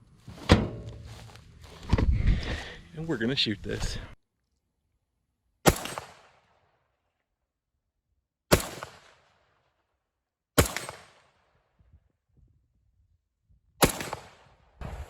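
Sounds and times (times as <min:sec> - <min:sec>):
gunshots with short echo: 0:05.7 - 0:06.3, 0:08.5 - 0:09.1, 0:10.6 - 0:11.2, 0:13.8 - 0:15.0.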